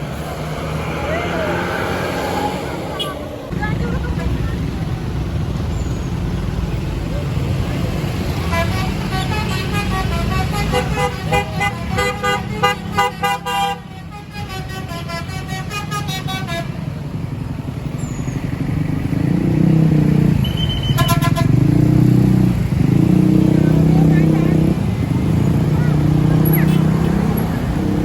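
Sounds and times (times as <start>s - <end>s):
multi-tone bus horn melody: 8.3s - 16.9s, 20.4s - 21.7s.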